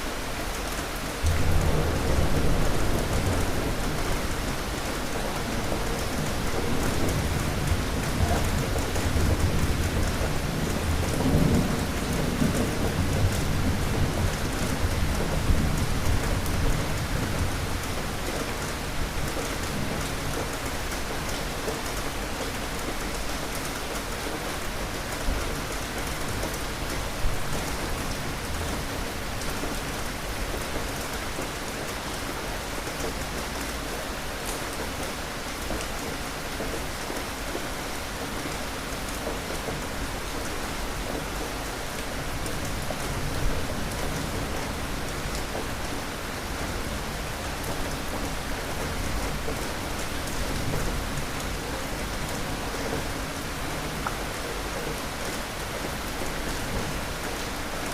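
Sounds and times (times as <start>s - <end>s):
steady rain falling: 0.0s - 57.9s
low roll of thunder: 1.2s - 17.6s.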